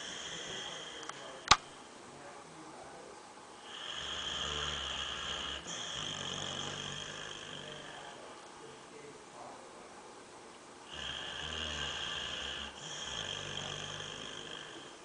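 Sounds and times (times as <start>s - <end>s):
dog snoring: 0.0s - 1.4s, 3.6s - 8.2s, 10.9s - 15.0s.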